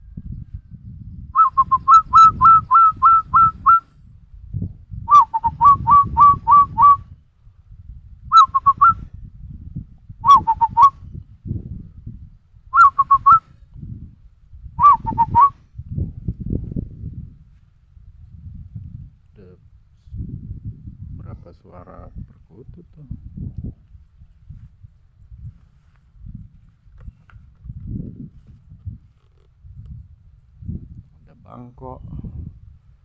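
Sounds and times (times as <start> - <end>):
person whistling dove call: 1.4 - 3.8, 5.1 - 7.0, 8.3 - 9.0, 10.2 - 11.0, 12.8 - 13.4, 14.8 - 15.6.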